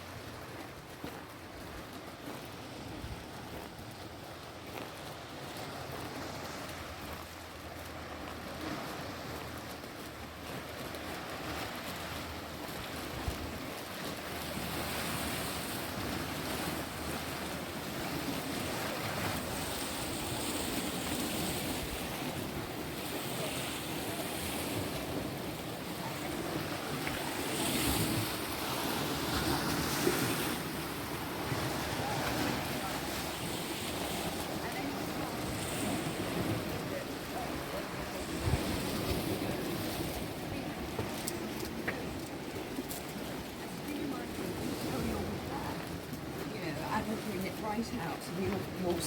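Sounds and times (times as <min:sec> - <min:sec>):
sea waves washing on rocks: 0:00.0 - 0:49.0
wind buffeting microphone: 0:11.1 - 0:49.0.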